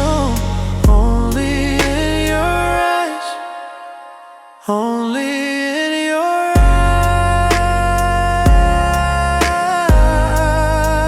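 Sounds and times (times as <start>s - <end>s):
drum beat and bass: 0.0s - 2.5s, 6.6s - 11.0s
person singing slow r and b: 0.0s - 11.0s.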